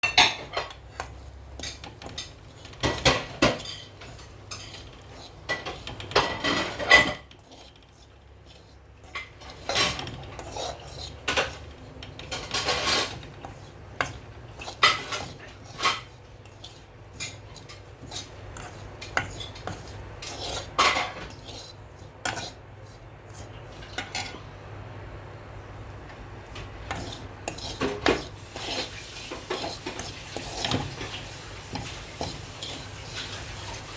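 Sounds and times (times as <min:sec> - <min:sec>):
metal spoon scraping metal pan: 0:00.0 - 0:24.5, 0:26.6 - 0:33.9.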